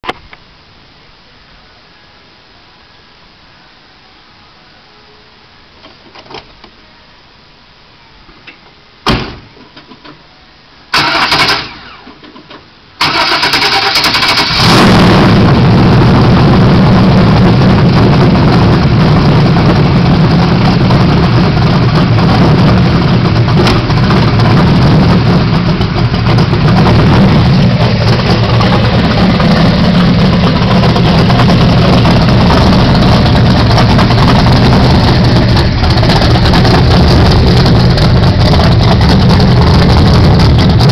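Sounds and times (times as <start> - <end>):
engine starting bursts: 10.9 - 15.5
loud rough engine idle: 13.1 - 40.9.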